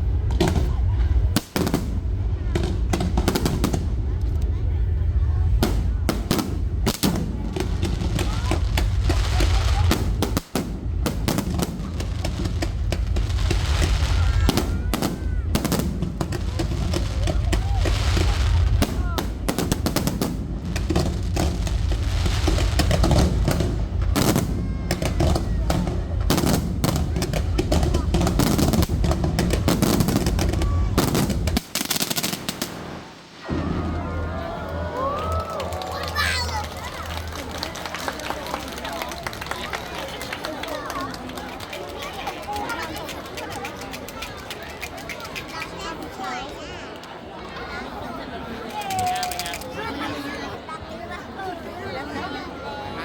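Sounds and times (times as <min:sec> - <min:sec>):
low rumble: 0:00.0 - 0:31.6, 0:33.4 - 0:37.5
fireworks bangs and crackles: 0:00.0 - 0:50.7.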